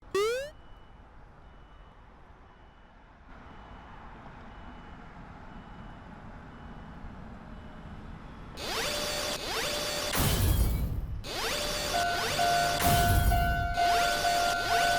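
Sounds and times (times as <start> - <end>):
faint high beep: 0.0 - 0.8.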